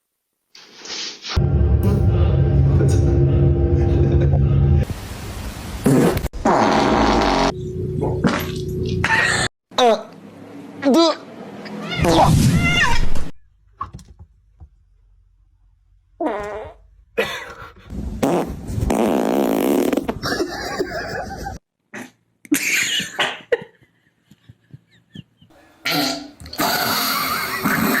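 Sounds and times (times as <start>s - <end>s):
fart sounds: 5.8s - 7.6s, 16.2s - 16.8s, 18.2s - 20.3s, 25.9s - 28.0s.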